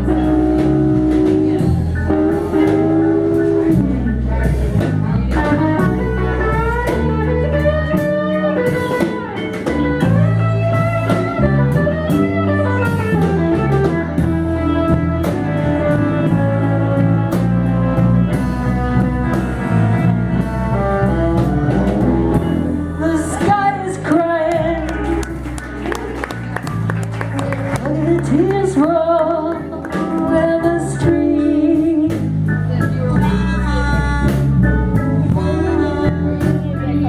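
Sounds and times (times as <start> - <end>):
bass: 0.0 - 37.0
drum kit: 0.0 - 37.0
electric guitar bending notes: 0.0 - 37.0.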